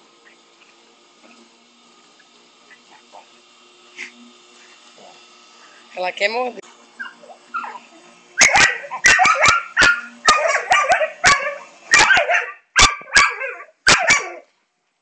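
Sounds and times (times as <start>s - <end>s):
dog barking excitedly: 8.4s - 14.4s.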